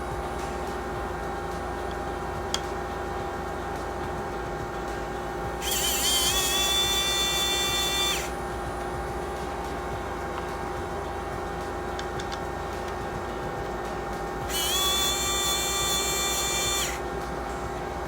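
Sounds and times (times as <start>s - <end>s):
steady background hum: 0.0s - 18.0s
electric screwdriver motor whining: 5.6s - 8.4s, 14.5s - 17.0s.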